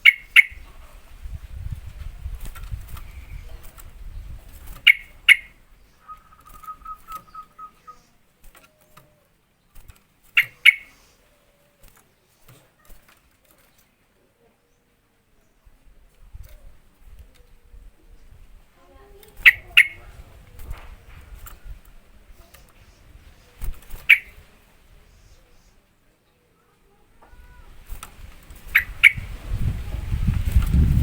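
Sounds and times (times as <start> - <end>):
bulbul calling: 0.0 - 1.0, 3.0 - 9.2, 10.2 - 12.9, 19.4 - 20.8, 22.4 - 25.8, 28.5 - 29.7.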